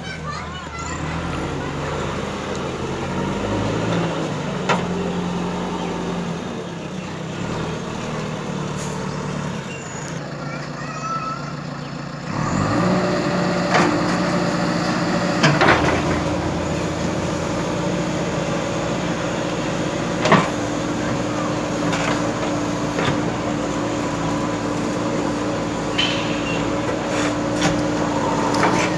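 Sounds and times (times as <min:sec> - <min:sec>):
diesel engine running: 0:00.0 - 0:28.9
machine knocks and clanks: 0:25.9 - 0:28.9.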